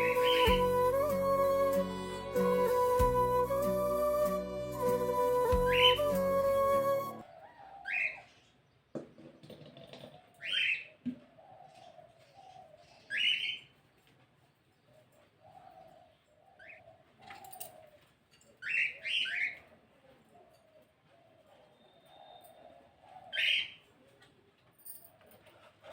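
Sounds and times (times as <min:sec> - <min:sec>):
fainter lower bird calls: 0:20.5 - 0:23.8.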